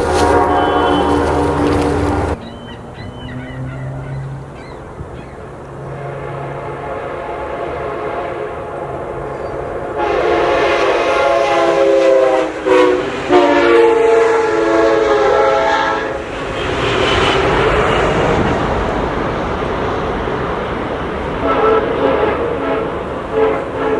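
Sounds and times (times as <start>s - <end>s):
train air horn: 0.0s - 2.4s, 5.8s - 18.4s, 21.3s - 23.9s
train wheels on rails rushing: 0.0s - 3.3s, 5.0s - 23.9s.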